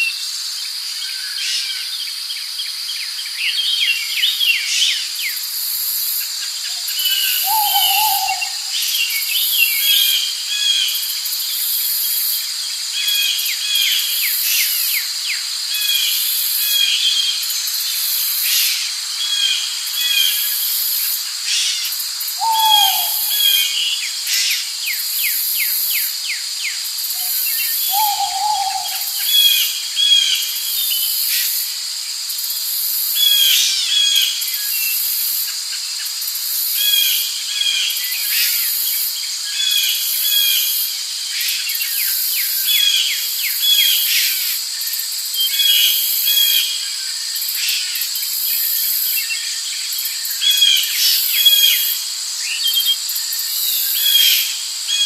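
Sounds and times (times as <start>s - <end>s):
insects chirring: 0.0s - 55.0s
short bird calls: 7.0s - 8.8s, 22.4s - 23.8s
low hooting call: 7.4s - 8.7s, 22.4s - 23.5s.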